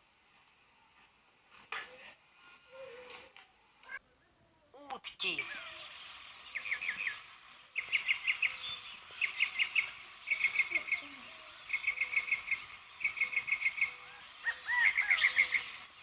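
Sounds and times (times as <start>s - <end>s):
background birdsong: 0.5s - 16.0s
looping bird call notes: 7.8s - 16.0s.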